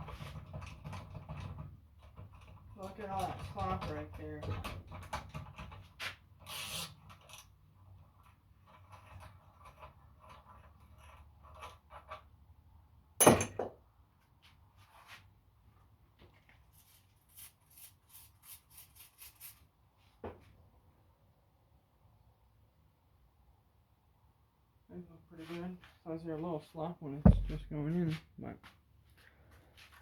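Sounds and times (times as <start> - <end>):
loud metallic knock: 27.3 - 27.9.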